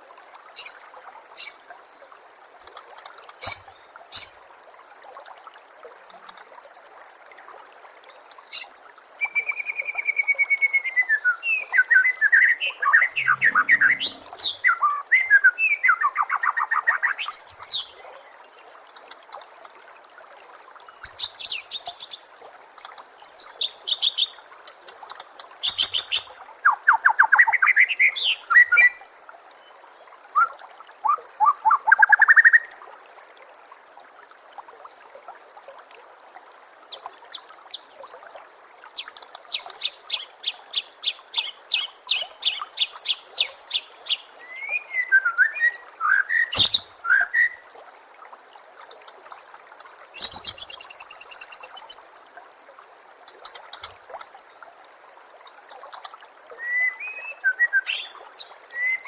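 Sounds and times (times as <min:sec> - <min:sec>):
trickle of running water: 0:00.0 - 0:59.0
bird whistles and trills: 0:01.4 - 0:01.6, 0:08.5 - 0:17.9, 0:39.0 - 0:47.6, 0:50.2 - 0:52.0, 0:56.6 - 0:59.0.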